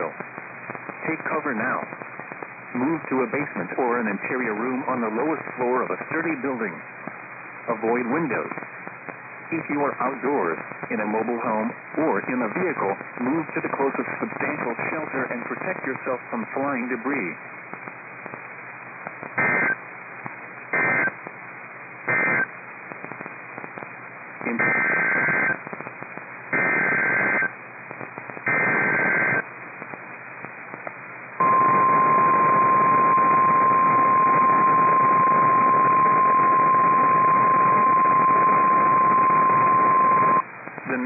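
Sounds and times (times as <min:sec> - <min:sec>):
radio hiss: 0:00.0 - 0:41.0
harsh two-tone data bursts: 0:19.4 - 0:19.8, 0:20.8 - 0:21.2, 0:22.1 - 0:22.5, 0:24.5 - 0:25.6, 0:26.5 - 0:27.5, 0:28.4 - 0:29.4, 0:31.4 - 0:41.0
steady warning alarm tone: 0:31.4 - 0:40.4.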